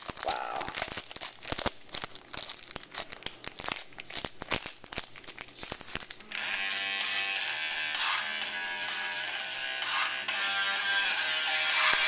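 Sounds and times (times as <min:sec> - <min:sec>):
wrapper crinkling and tearing: 0:00.0 - 0:06.3.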